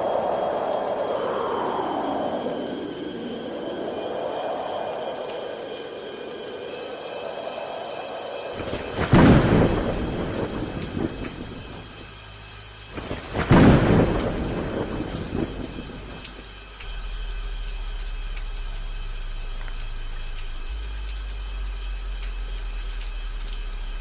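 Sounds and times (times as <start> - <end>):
thunderclap rumbling: 0.0 - 23.6
low steady hum: 0.0 - 24.0
steady rain: 0.0 - 24.0.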